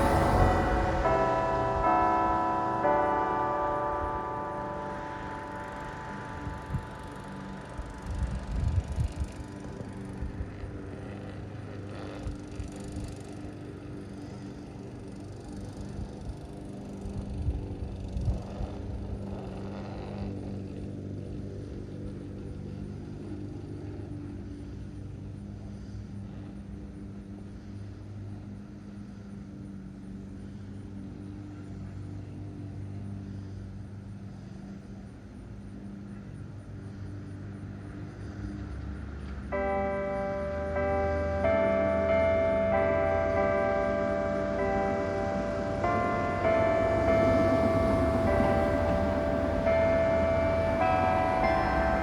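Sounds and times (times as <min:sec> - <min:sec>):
vehicle passing by: 0:00.0 - 0:02.4, 0:40.4 - 0:52.0
even tones: 0:00.0 - 0:11.3, 0:39.5 - 0:52.0
low mechanical hum: 0:05.8 - 0:52.0.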